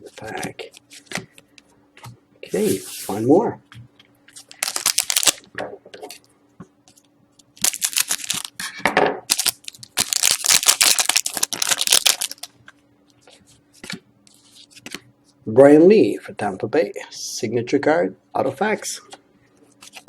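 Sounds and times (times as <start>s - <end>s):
wrappers crinkling: 4.3s - 5.5s, 7.6s - 8.6s, 9.3s - 12.5s
card packs being torn open: 4.4s - 5.4s, 7.6s - 8.6s, 9.3s - 12.5s.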